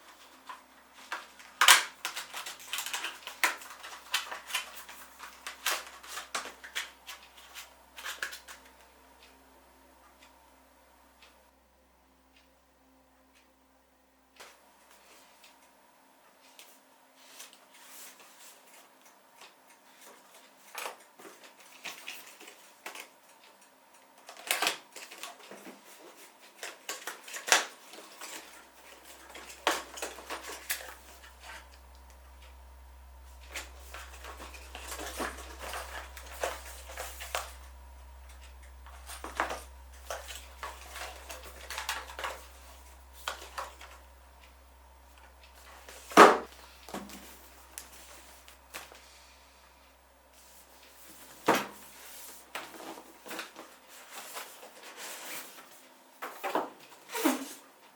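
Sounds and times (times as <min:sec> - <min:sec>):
steady low hum: 0:27.4 - 0:54.2.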